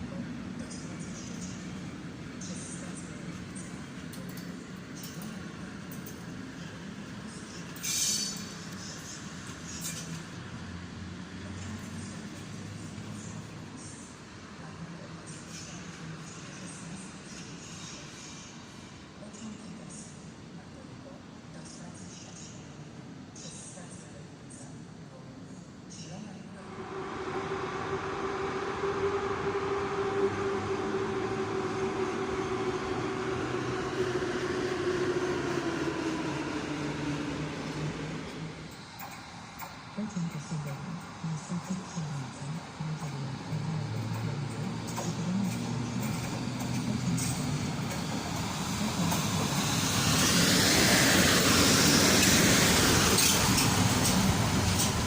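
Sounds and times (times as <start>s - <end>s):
train running past with whine: 0.0s - 20.8s, 26.5s - 55.0s.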